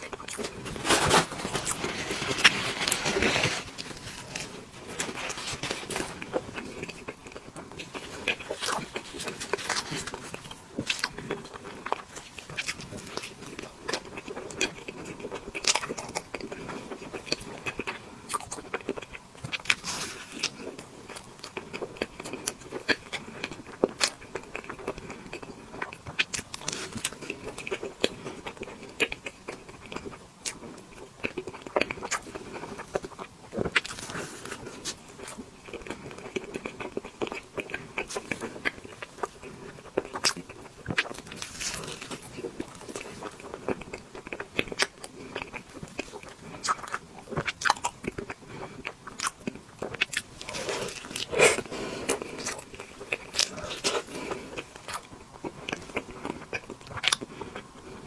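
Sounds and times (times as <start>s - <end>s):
chewing with wet mouth clicks: 34.9s - 58.0s.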